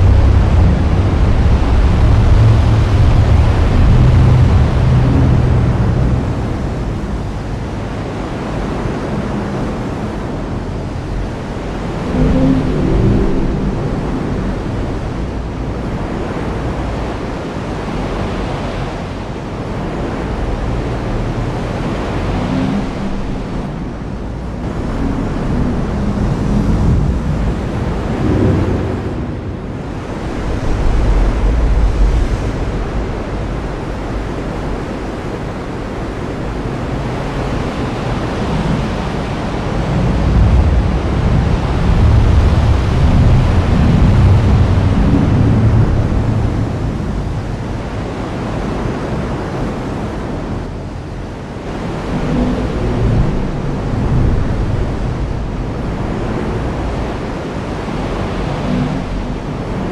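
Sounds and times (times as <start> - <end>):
low rumbling thunder: 0.0 - 7.2
heavy rain: 0.0 - 59.9.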